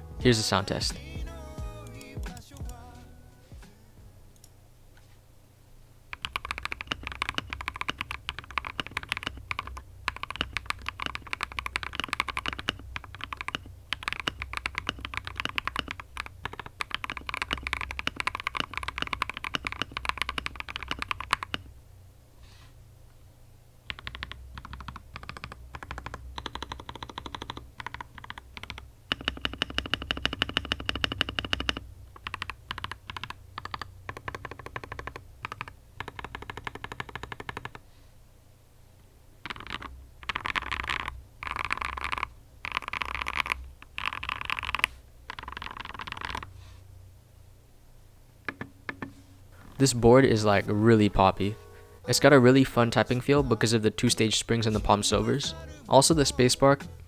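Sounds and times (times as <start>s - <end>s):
mechanical keyboard typing: 6.1s - 21.7s, 23.9s - 37.8s, 39.4s - 46.5s.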